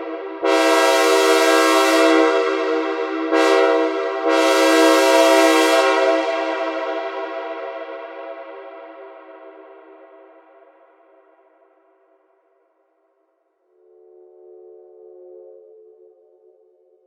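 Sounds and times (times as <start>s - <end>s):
synthesized locomotive air horn: 0.0s - 9.6s.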